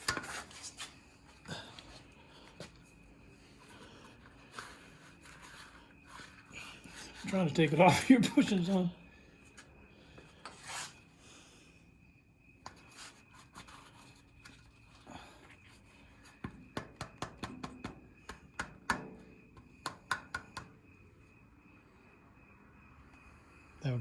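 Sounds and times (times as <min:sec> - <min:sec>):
faint rubbing and scraping: 0:03.3 - 0:07.7.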